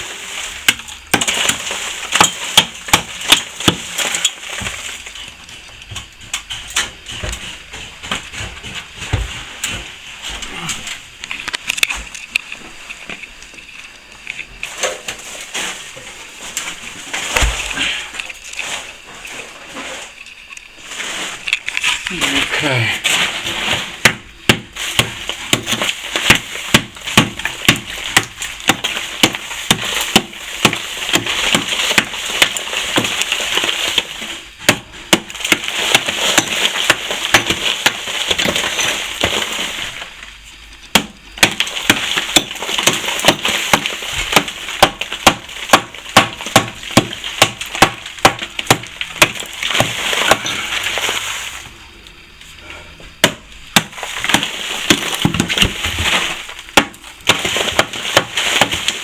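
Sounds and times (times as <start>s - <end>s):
hand tool chipping plaster: 0.0s - 5.0s, 22.2s - 40.1s, 40.9s - 51.3s, 53.2s - 59.0s.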